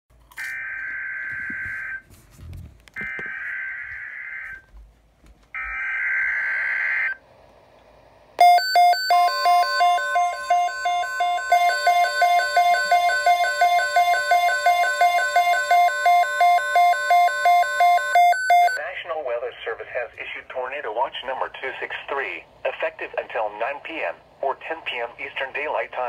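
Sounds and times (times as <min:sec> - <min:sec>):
chiming alarm: 0:08.4 - 0:18.8
steady alert tone: 0:08.4 - 0:18.8.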